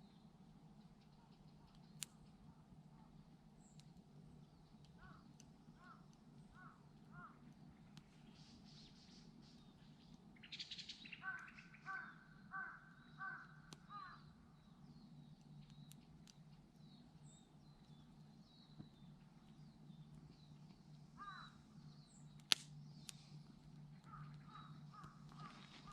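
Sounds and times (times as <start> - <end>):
birds calling: 4.4 - 7.5, 8.3 - 25.9.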